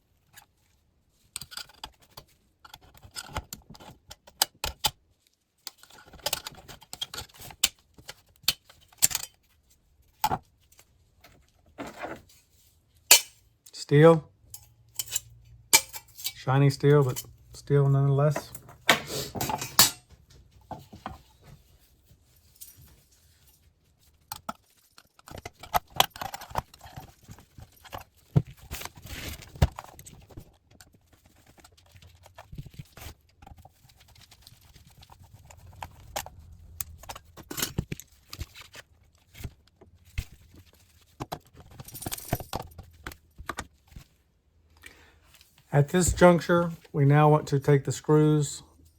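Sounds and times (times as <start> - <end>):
tools clanking on sheet steel: 13.1 - 13.4, 14.5 - 17.4, 18.1 - 20.1.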